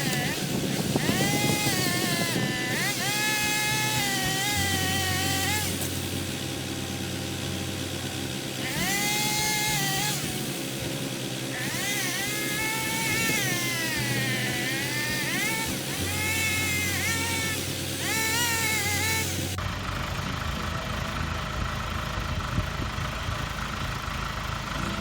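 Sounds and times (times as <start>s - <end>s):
small saw engine revving: 0.0s - 19.7s
low engine hum: 0.0s - 25.0s.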